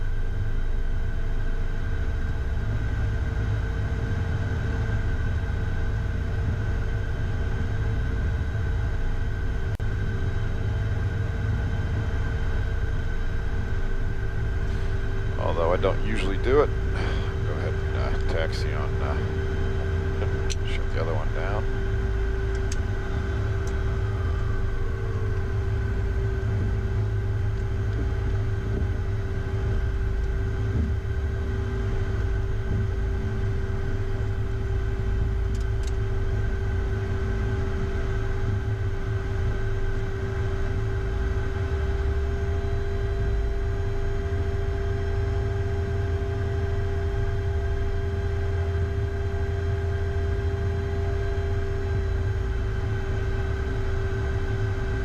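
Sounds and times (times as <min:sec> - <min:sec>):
jet engine hum: 0:00.0 - 0:55.0
low rumble: 0:13.1 - 0:39.8.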